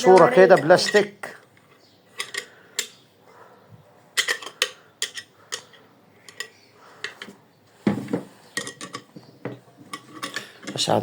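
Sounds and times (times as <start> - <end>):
small metal parts clinking: 0.0 - 3.0, 4.2 - 7.3, 8.5 - 11.0.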